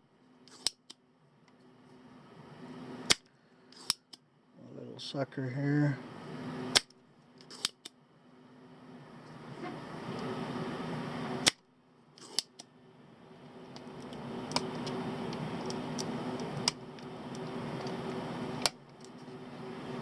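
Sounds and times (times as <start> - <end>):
steady low hum: 0.0 - 20.0
hand tools clicking on circuit board: 0.5 - 1.0, 6.8 - 7.9.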